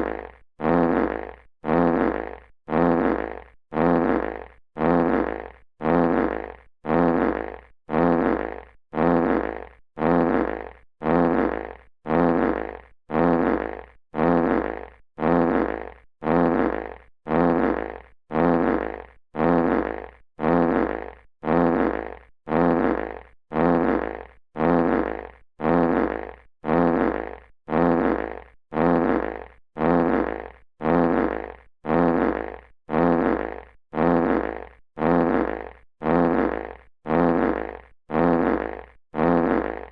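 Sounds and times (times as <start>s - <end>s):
short fart sound effect: 0.0s - 39.9s.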